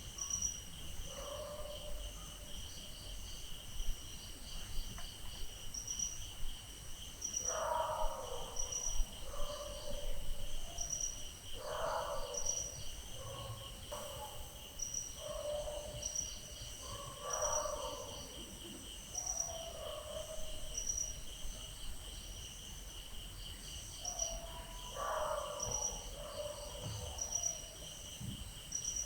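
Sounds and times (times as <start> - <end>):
crickets trilling: 0.0 - 29.0
dog barking: 1.1 - 2.4, 7.4 - 10.9, 11.6 - 14.6, 15.2 - 16.2, 16.8 - 18.4, 19.3 - 20.7, 24.1 - 27.7.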